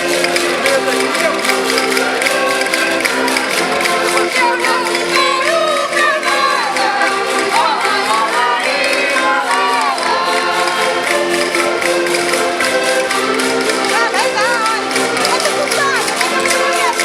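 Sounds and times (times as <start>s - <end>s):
button accordions holding chords: 0.0s - 17.0s
women singing: 4.2s - 11.1s.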